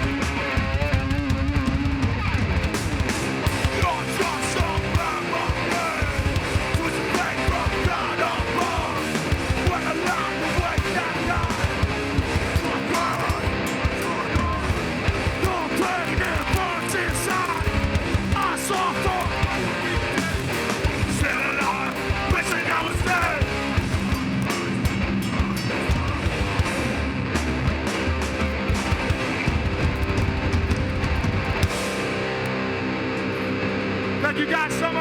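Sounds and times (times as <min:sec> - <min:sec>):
pounding drums: 0:00.0 - 0:32.4
distorted electric guitars: 0:00.0 - 0:35.0
shouted vocals: 0:03.6 - 0:23.9.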